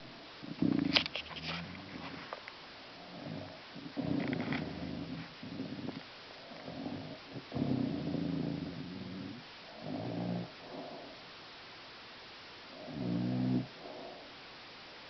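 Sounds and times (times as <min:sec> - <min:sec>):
woman snoring: 0:06.6 - 0:11.2, 0:12.8 - 0:14.3.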